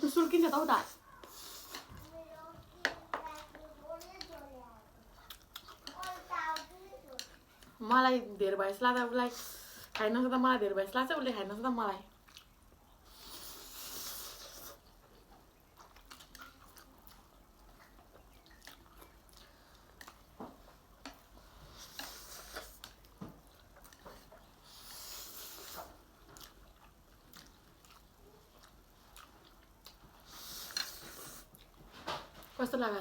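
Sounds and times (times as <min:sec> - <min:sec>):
chewing and biting noodles: 0:26.4 - 0:31.8.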